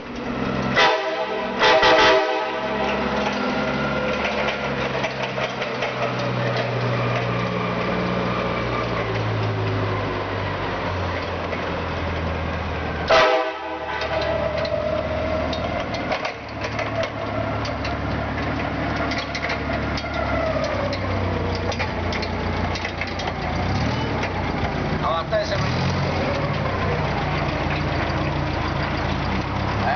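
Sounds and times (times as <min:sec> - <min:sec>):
forklift engine running: 0:00.0 - 0:29.9
train horn blasts: 0:00.7 - 0:03.2, 0:13.1 - 0:14.6.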